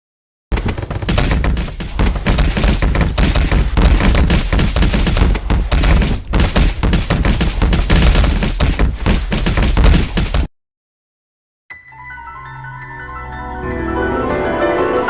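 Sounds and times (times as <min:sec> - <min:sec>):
rapid gunfire: 0:00.5 - 0:10.5.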